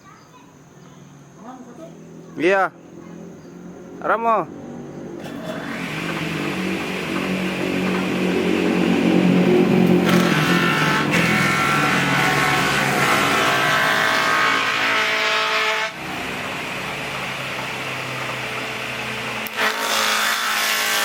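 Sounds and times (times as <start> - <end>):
planer cutting board: 5.2 - 16.8, 17.6 - 21.0
wood planer motor hum: 5.2 - 21.0.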